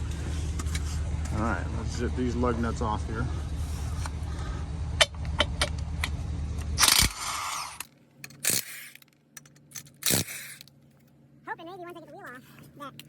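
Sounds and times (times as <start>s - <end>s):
impact wrench burst: 6.7s - 9.1s, 9.8s - 10.7s.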